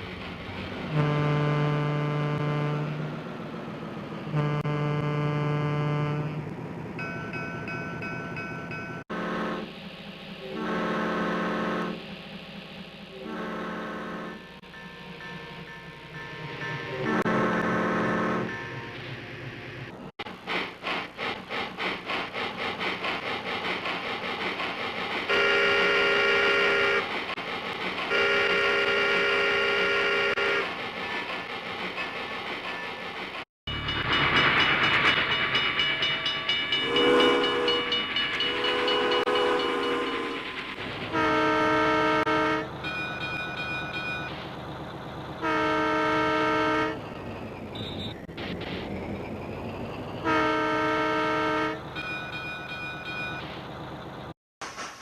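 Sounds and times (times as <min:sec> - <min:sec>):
train wheel clatter: 0:00.0 - 0:01.0, 0:17.7 - 0:50.6, 0:51.8 - 0:55.0
train horn blasts: 0:00.9 - 0:03.1, 0:04.3 - 0:06.4, 0:09.1 - 0:09.7, 0:10.4 - 0:12.0, 0:13.2 - 0:14.4, 0:17.0 - 0:18.5, 0:25.3 - 0:27.1, 0:28.1 - 0:30.7, 0:36.8 - 0:40.4, 0:41.1 - 0:42.7, 0:45.4 - 0:47.0, 0:50.2 - 0:51.8.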